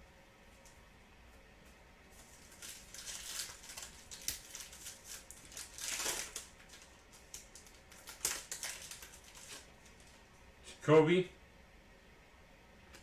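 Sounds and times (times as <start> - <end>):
card wrapper crinkling and rustling: 2.1 - 10.2.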